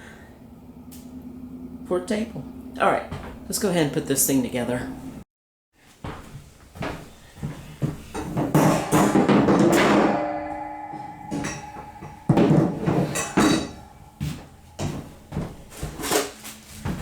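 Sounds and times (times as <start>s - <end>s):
knocking and clattering of parts: 7.4s - 17.0s
struck metal piece ringing: 8.2s - 15.5s.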